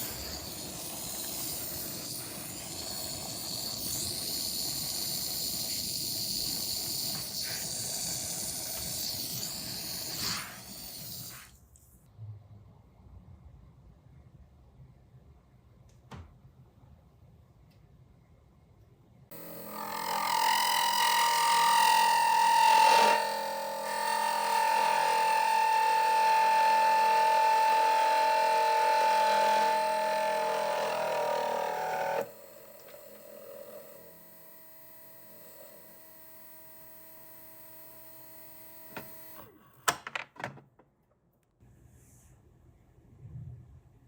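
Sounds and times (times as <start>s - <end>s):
electric motor whining: 19.3s - 39.5s.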